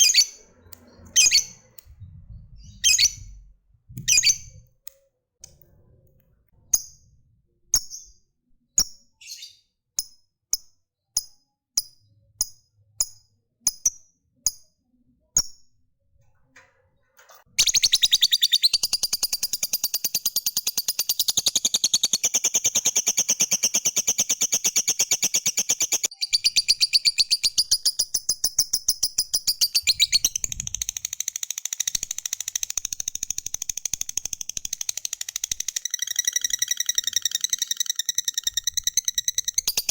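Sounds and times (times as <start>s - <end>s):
lovebird sharp chirps: 0.0s - 1.9s, 2.6s - 4.6s, 8.8s - 10.2s, 17.6s - 39.9s
lovebird rapid chatter trill: 17.6s - 39.9s.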